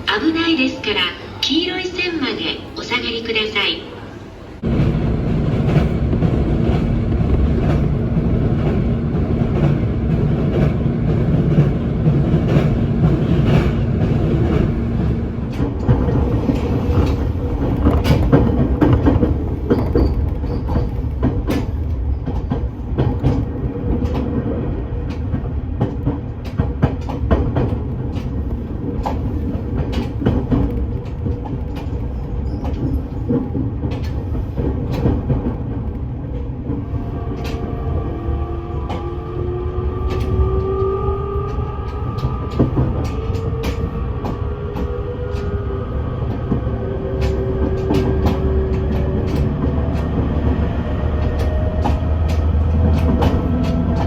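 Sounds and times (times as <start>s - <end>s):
train wheels rumbling on rails: 4.1s - 54.0s
wheels clicking over rail joints: 46.3s - 54.0s.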